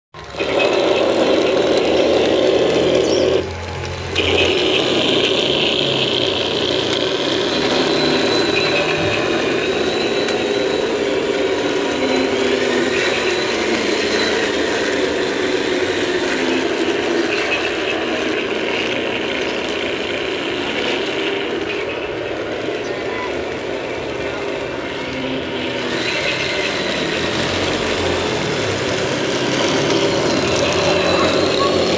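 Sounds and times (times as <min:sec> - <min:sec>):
mechanical whirring and gear noise: 0:00.2 - 0:31.9
simulated tank engine from speaker: 0:00.2 - 0:31.9.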